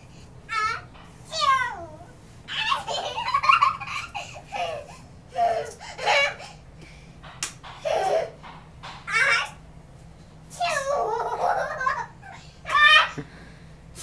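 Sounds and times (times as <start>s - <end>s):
young child laughing: 2.5s - 6.6s, 7.8s - 8.4s, 10.6s - 13.4s.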